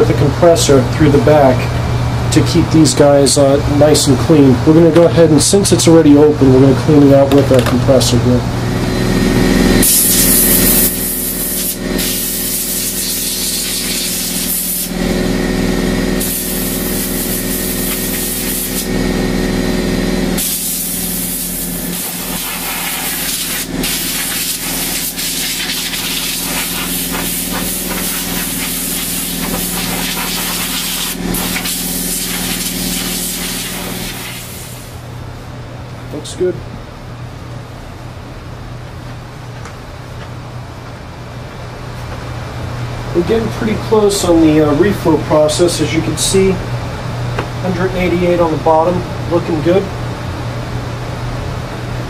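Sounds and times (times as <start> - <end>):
steady low hum: 0.0 - 52.0
compressed air blow gun hissing: 9.8 - 15.0, 16.2 - 19.0, 20.4 - 35.0.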